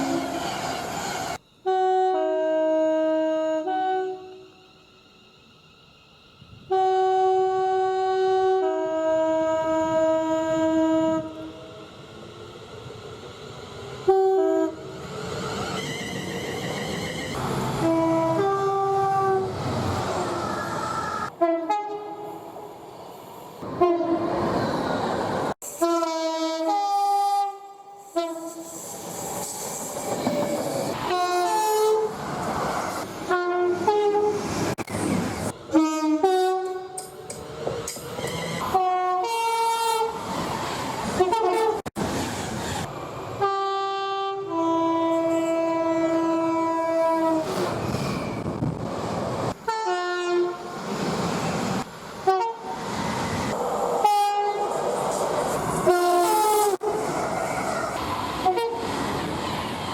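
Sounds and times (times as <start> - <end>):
two-tone train horn: 0.0 - 0.4, 1.6 - 4.4, 6.7 - 11.5, 14.0 - 14.9, 17.8 - 19.5, 21.3 - 22.5, 23.7 - 24.3, 25.8 - 28.7, 31.0 - 32.1, 33.3 - 34.4, 35.7 - 37.1, 38.7 - 40.2, 41.2 - 41.9, 43.4 - 47.6, 49.6 - 50.6, 52.2 - 52.8, 54.0 - 54.7, 55.8 - 57.0, 58.4 - 58.9
passing train rumble: 0.0 - 59.9.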